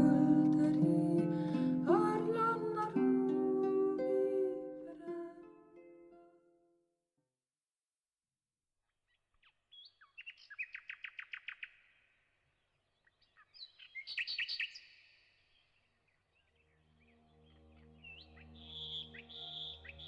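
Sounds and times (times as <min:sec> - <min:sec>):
songbird singing: 0:09.1 - 0:20.0.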